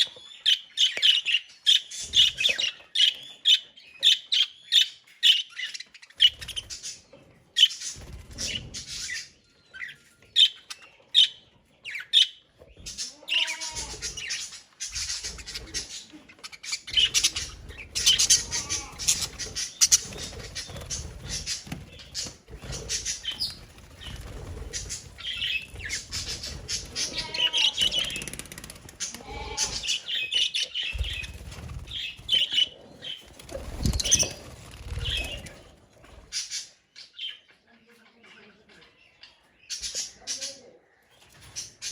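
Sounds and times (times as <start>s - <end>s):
budgerigars chirping: 0.0s - 34.4s
wings flapping: 7.8s - 9.2s, 16.9s - 36.5s.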